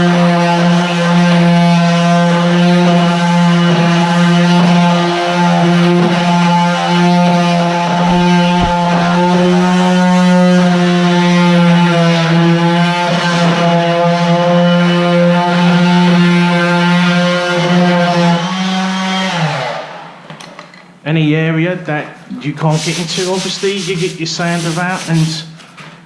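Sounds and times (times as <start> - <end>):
orbital sander motor hum: 8.0 - 9.0
brief knocks: 8.1 - 9.0.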